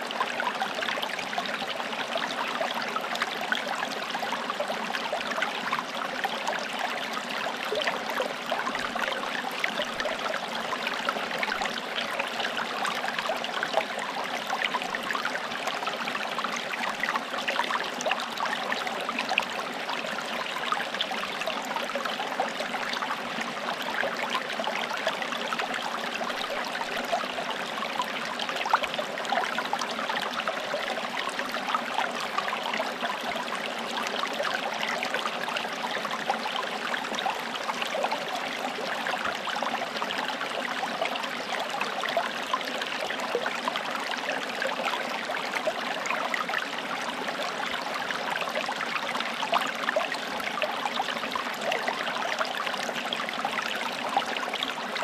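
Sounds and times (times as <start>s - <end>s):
stream babbling over stones: 0.1s - 55.0s.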